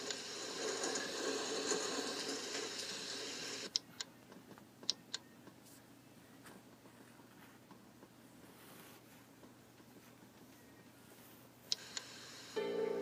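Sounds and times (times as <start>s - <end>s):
steady hiss: 0.0s - 3.8s, 11.7s - 13.0s.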